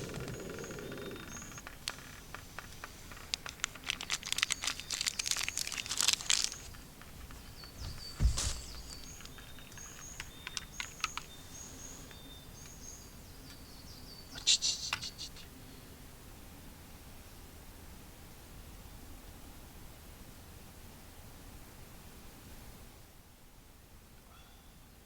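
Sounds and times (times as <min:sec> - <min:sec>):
crackling clicks: 0:00.0 - 0:11.3
high bird chirps: 0:07.4 - 0:13.1
loud thump: 0:07.8 - 0:09.0.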